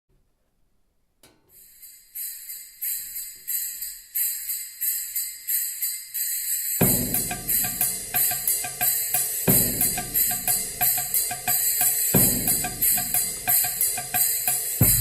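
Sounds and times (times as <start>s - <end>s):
jingling percussion: 1.5s - 15.0s
drums and bass: 9.4s - 15.0s.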